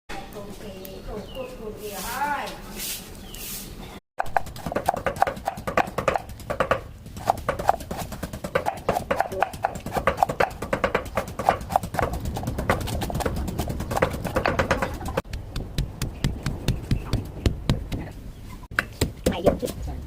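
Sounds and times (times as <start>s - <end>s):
knife chopping on wooden board: 4.2s - 18.0s.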